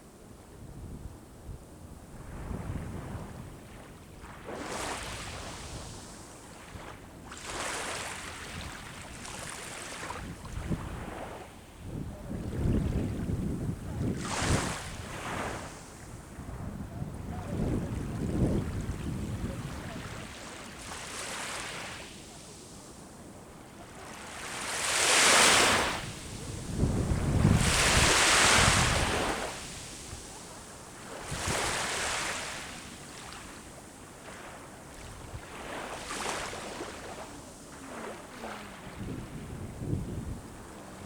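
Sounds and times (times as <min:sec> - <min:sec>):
sea waves breaking on shore: 0:02.3 - 0:41.0
wind buffeting microphone: 0:10.2 - 0:20.3, 0:25.6 - 0:30.3, 0:31.2 - 0:32.4, 0:38.5 - 0:41.0.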